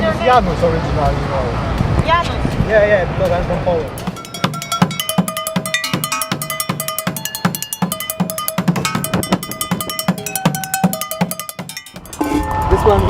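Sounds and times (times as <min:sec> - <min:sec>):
drumming on pots and pans: 0:03.9 - 0:12.9.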